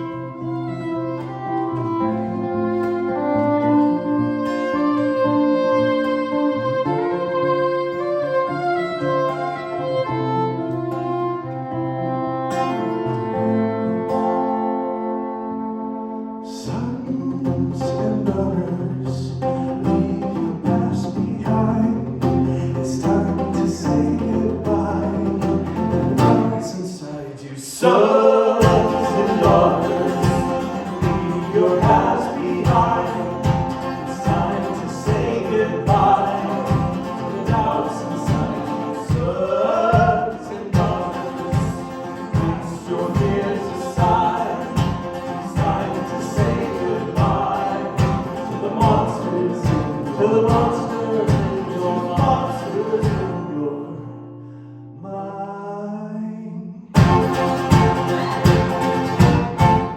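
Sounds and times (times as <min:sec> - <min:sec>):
live band music: 0:00.0 - 0:16.5, 0:23.1 - 0:26.6, 0:28.6 - 0:53.4, 0:57.0 - 0:59.9
voices singing together: 0:16.5 - 0:54.2, 0:57.0 - 0:59.9
kick drum beat: 0:28.6 - 0:39.4, 0:40.0 - 0:45.0, 0:45.6 - 0:49.1, 0:57.0 - 0:59.9.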